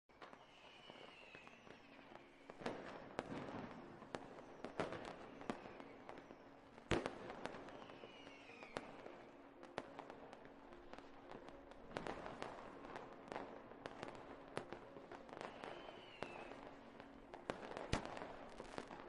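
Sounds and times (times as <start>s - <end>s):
falling firework whistle: 0.1s - 9.3s, 14.0s - 19.0s.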